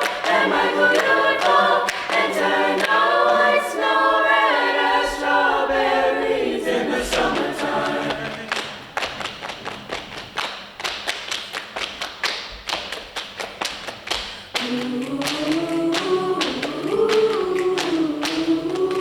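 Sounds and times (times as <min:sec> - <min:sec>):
choir singing held chords: 0:00.0 - 0:08.7, 0:14.6 - 0:19.0.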